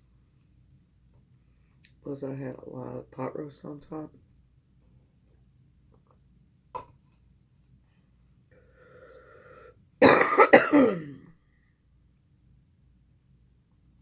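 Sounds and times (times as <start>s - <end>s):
loud belch: 10.0s - 11.2s.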